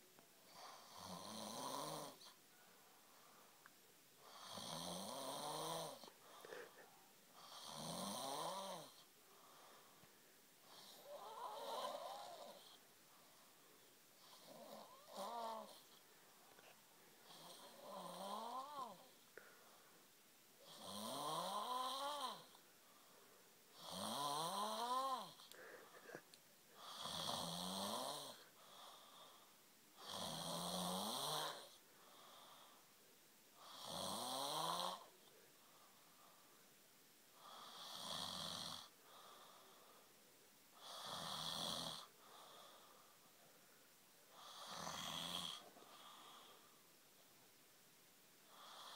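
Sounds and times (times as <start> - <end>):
person snoring: 0.5 - 2.4, 4.2 - 9.1, 10.7 - 12.8, 14.2 - 16.0, 17.2 - 19.1, 20.6 - 22.6, 23.8 - 26.2, 26.8 - 29.3, 30.0 - 31.8, 33.6 - 35.2, 37.4 - 38.9, 40.8 - 42.1, 44.4 - 46.6.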